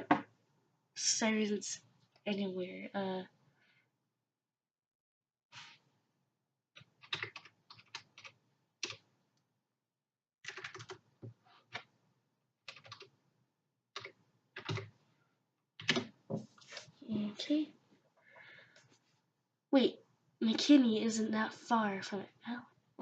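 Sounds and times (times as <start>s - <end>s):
computer keyboard typing: 6.8s - 9.0s, 10.4s - 11.0s, 12.7s - 13.1s, 14.0s - 14.9s, 15.8s - 16.2s.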